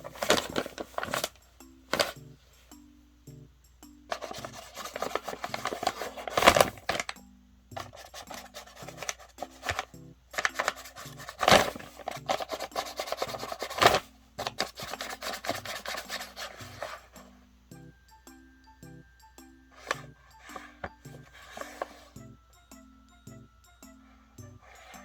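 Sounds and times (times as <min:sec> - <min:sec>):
paper bag rustling and crinkling: 0:00.0 - 0:02.2, 0:04.1 - 0:07.2, 0:07.8 - 0:17.2, 0:19.8 - 0:22.2.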